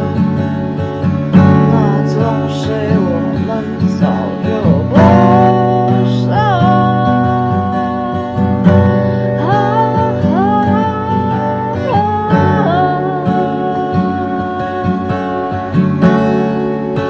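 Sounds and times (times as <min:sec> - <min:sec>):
acoustic guitar strumming: 0:00.0 - 0:17.0
person singing: 0:01.4 - 0:17.0.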